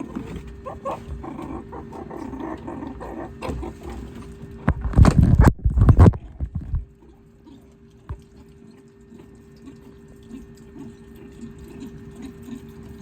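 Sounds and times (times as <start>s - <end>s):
meerkats calling: 0.0s - 4.1s.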